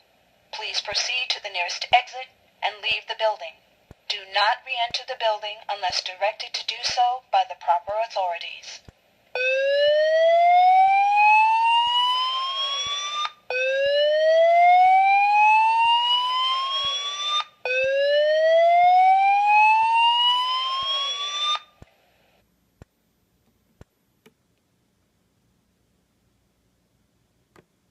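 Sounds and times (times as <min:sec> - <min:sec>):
alarm speaker whoop tone: 0:09.4 - 0:21.6.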